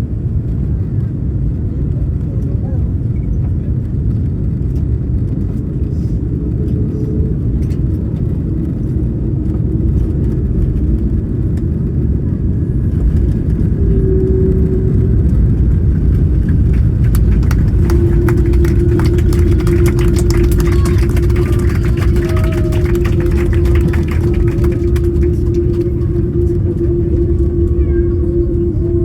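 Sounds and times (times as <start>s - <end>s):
airliner rumbling on runway: 0.0s - 29.0s
steady hum: 3.7s - 29.0s.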